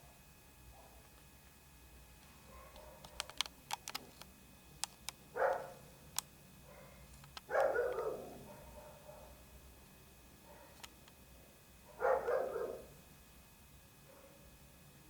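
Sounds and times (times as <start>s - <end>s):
dog barking: 0.7s - 1.0s, 2.5s - 3.4s, 5.3s - 5.8s, 6.6s - 9.4s, 10.4s - 10.8s, 11.9s - 13.0s, 14.1s - 14.4s
sharp clicks: 2.8s - 6.3s, 7.1s - 8.0s.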